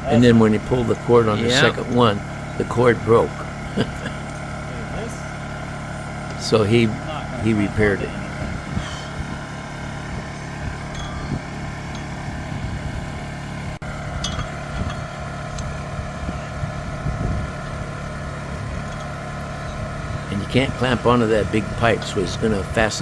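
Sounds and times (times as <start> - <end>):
generator engine running: 0.0 - 23.0.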